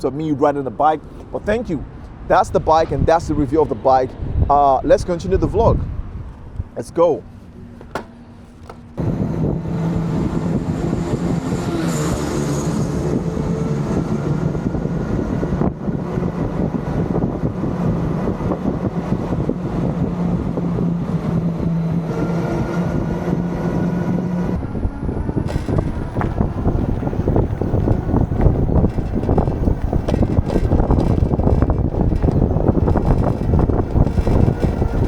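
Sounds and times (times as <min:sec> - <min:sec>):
rolling and wind noise: 0:00.0 - 0:35.0
vehicle motor hum: 0:07.3 - 0:35.0.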